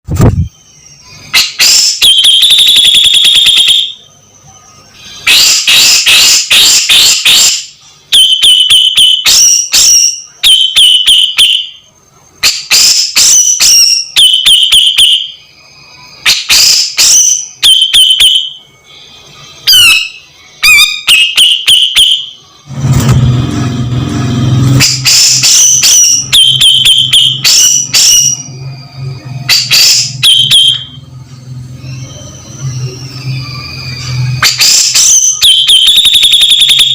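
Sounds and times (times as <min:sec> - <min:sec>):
bird calling with harsh rattles: 0:05.2 - 0:07.6.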